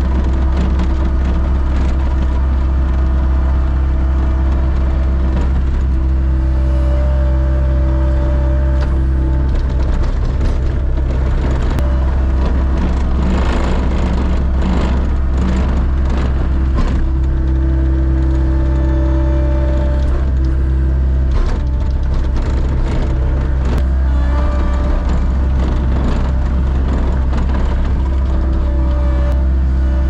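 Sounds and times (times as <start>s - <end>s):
vehicle engine droning: 0.0s - 30.0s.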